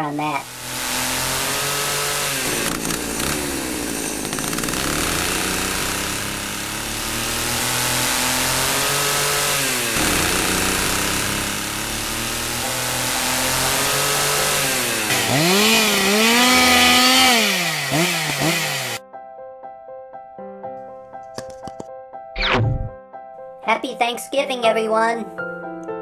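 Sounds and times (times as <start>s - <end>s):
cartoon chainsaw revving: 0.3s - 19.0s.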